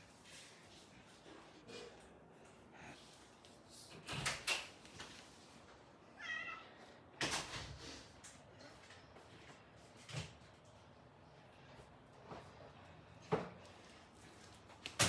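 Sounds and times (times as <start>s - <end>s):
cat meowing: 6.2s - 6.9s.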